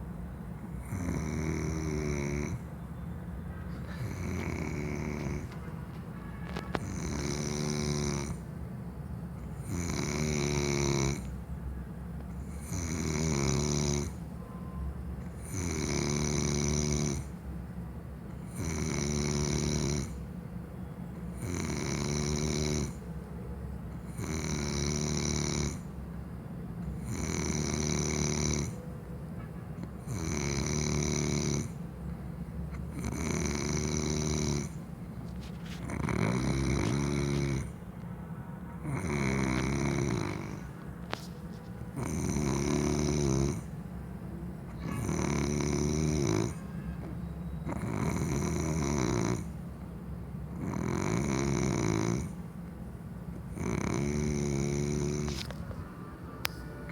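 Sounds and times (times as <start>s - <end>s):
person snoring: 0.8s - 2.6s, 3.9s - 5.6s, 6.8s - 8.4s, 9.6s - 11.3s, 12.5s - 14.2s, 15.4s - 17.3s, 18.5s - 20.2s, 21.4s - 23.0s, 24.1s - 25.9s, 27.0s - 28.8s, 30.1s - 31.8s, 32.8s - 34.8s, 35.6s - 37.7s, 38.8s - 41.2s, 42.0s - 43.7s, 44.7s - 46.6s, 47.7s - 49.5s, 50.6s - 52.4s, 53.5s - 55.6s
quiet breathing: 3.5s - 8.5s, 29.8s - 49.6s, 53.4s - 56.9s.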